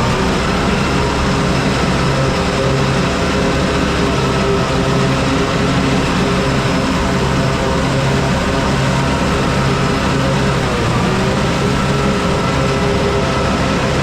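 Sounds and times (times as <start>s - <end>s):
tractor engine droning: 0.0s - 14.0s.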